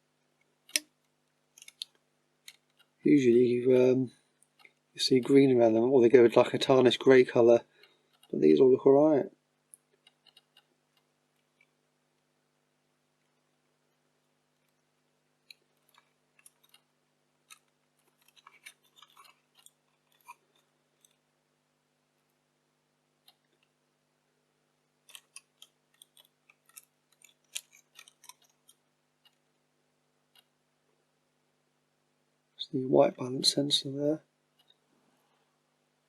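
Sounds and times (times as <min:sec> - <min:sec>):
small parts clicking and tapping: 0:00.3 - 0:03.0, 0:04.4 - 0:05.4, 0:07.8 - 0:08.4, 0:09.7 - 0:12.3, 0:15.4 - 0:21.2, 0:25.0 - 0:29.5, 0:30.3 - 0:30.6, 0:34.6 - 0:34.8.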